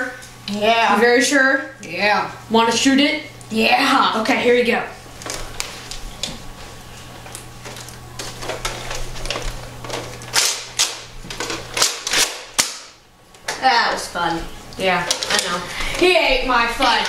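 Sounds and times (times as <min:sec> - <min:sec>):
toy blaster plastic clacks and snaps: 0:10.3 - 0:13.0.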